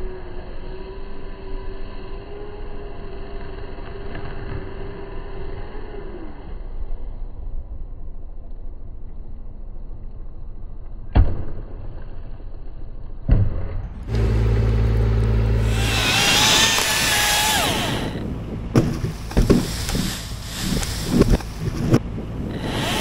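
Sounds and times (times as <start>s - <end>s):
engine with wavering whine: 0.0s - 11.1s, 12.1s - 23.0s
low engine rumble: 12.6s - 23.0s.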